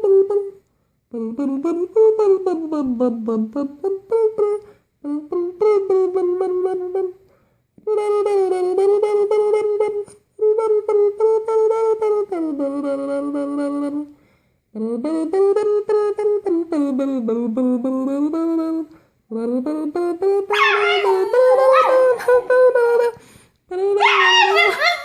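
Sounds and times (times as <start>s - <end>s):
dog howling: 20.5s - 23.1s, 24.0s - 25.0s.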